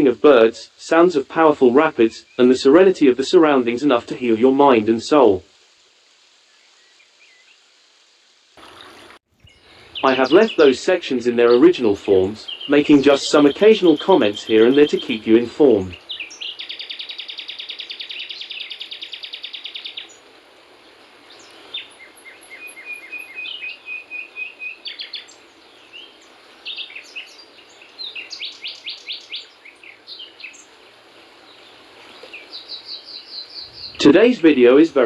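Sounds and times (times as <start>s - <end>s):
faint steady hiss: 0.0s - 35.0s
bird chirps: 8.6s - 20.2s, 21.3s - 30.7s, 31.5s - 34.9s
bird trilling: 9.4s - 20.1s, 32.2s - 34.4s.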